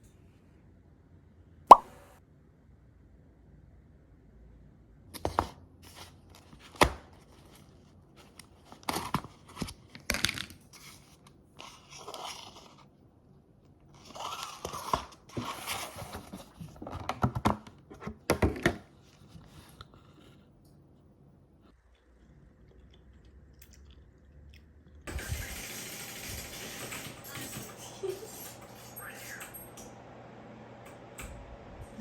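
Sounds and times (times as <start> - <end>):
packaging crinkling and tearing: 14.0 - 16.2.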